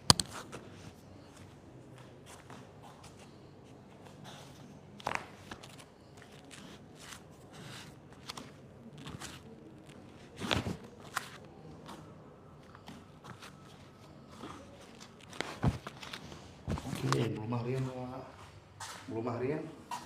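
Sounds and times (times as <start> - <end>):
clothing rustling: 5.0 - 18.0.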